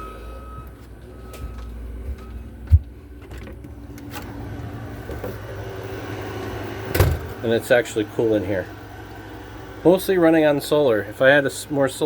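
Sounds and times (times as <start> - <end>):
air conditioner humming: 0.0 - 12.0
loud dull thump: 6.9 - 7.4.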